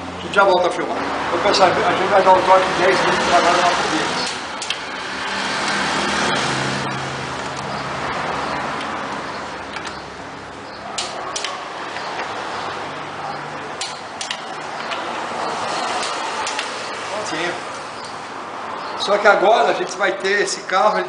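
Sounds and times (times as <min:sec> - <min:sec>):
workshop hum: 0:00.0 - 0:19.2
hand tool clicks: 0:04.2 - 0:04.8, 0:11.0 - 0:12.2, 0:13.8 - 0:15.0, 0:15.9 - 0:16.7.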